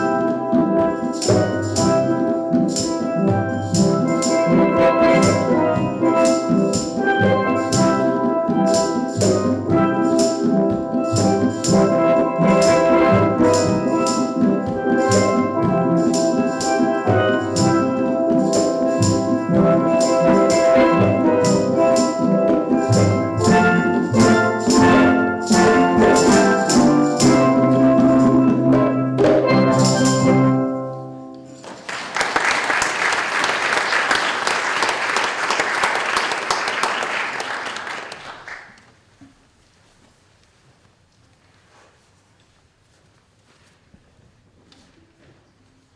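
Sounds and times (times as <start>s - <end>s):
steel drum band playing: 0.0s - 38.2s
audience applause: 31.6s - 38.8s.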